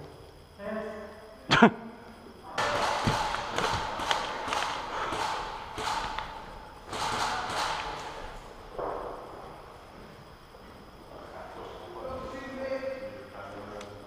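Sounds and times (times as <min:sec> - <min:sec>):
steady hiss: 0:02.2 - 0:14.0
airsoft shots and bb impacts: 0:02.6 - 0:09.1.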